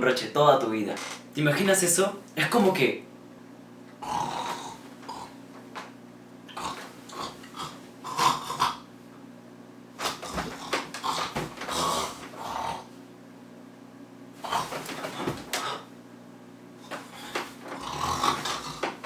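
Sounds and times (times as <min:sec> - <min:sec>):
man imitating snoring: 0:04.0 - 0:05.3, 0:06.5 - 0:08.9, 0:10.1 - 0:12.9, 0:14.4 - 0:15.9, 0:16.9 - 0:18.9.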